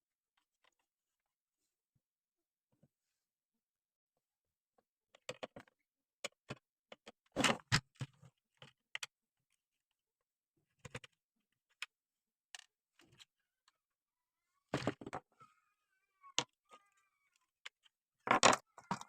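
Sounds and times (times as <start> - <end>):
hard objects clicking and knocking: 17.7 - 19.0.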